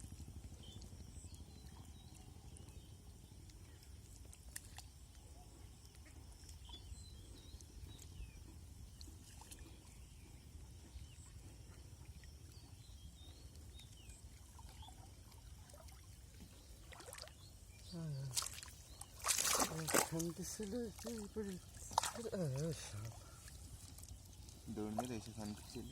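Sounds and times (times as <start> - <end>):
low outdoor rumble: 0.0 - 16.8.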